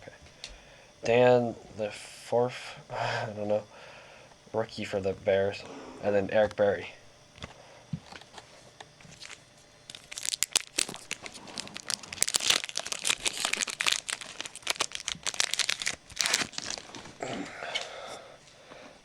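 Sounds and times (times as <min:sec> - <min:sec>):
card pack wrapper tearing: 0:09.1 - 0:17.2.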